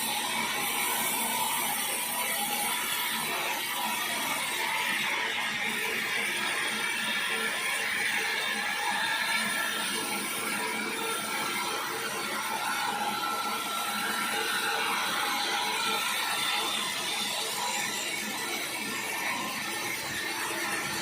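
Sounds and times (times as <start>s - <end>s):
sawmill saw cutting log: 0.0s - 21.0s
faint wavering whine: 7.5s - 21.0s.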